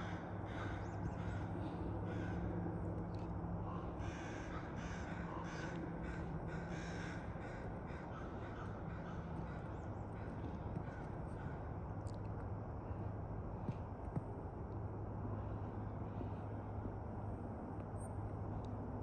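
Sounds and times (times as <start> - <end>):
crows cawing: 0.0 - 2.6, 3.6 - 11.8
steady low hum: 0.0 - 19.0.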